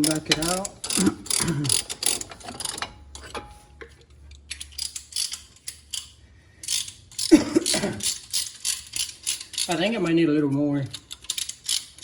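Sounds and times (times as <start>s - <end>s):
metallic clicks and ticks: 0.0s - 3.5s.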